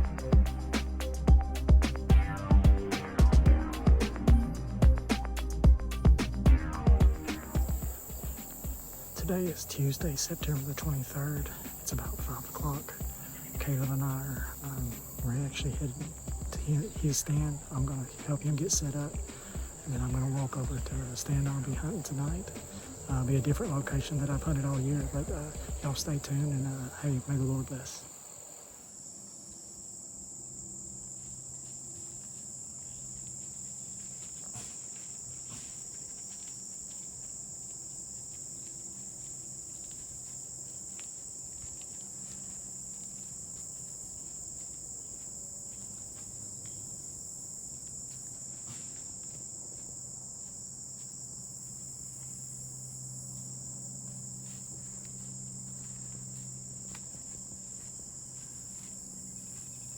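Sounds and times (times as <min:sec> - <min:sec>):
crickets trilling: 0:00.0 - 0:59.9
faint low hum: 0:30.4 - 0:59.9.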